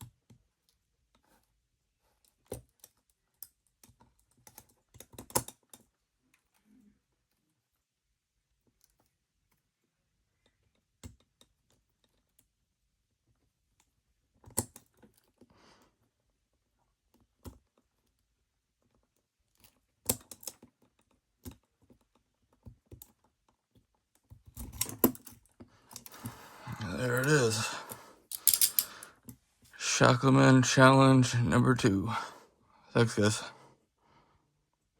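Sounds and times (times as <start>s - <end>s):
handcuff clicks and scrapes: 24.6s - 29.3s.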